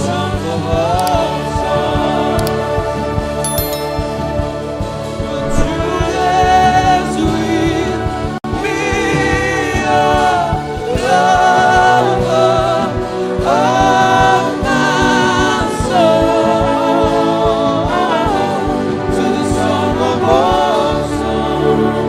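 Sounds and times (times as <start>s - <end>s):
wordless singing voices: 0.0s - 22.0s.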